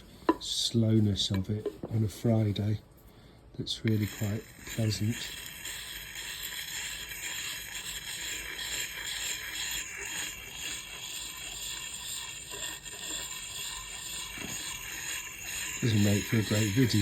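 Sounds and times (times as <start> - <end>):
axe blade scraping on sharpening stone: 3.9 - 17.0.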